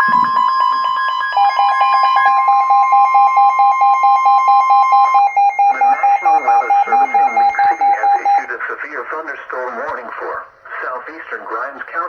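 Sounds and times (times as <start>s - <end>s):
warning alarm tone: 0.0s - 8.5s
fast beeping: 0.0s - 8.6s.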